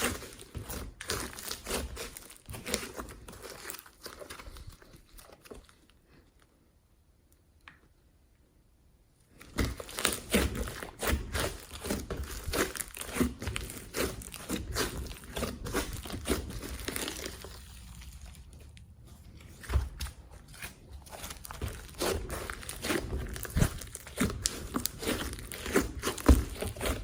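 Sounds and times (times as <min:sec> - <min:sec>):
slime squishing and popping: 0:09.4 - 0:27.0.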